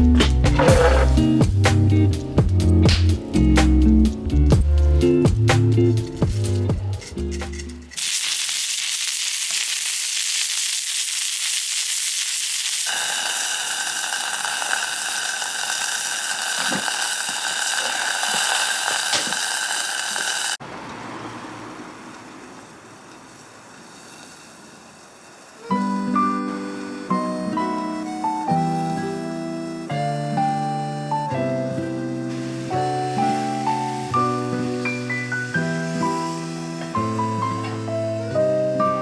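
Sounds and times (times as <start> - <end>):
food sizzling over campfire: 7.9 - 20.6, 22.6 - 39.0.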